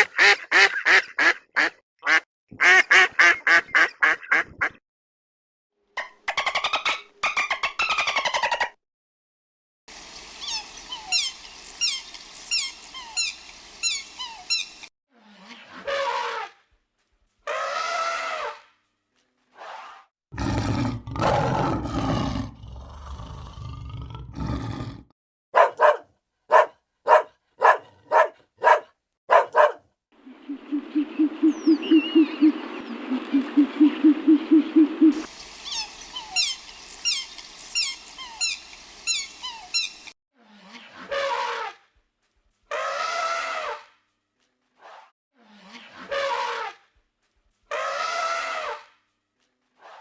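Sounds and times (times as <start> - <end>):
high chirps: 10.2 - 14.9, 30.4 - 40.1.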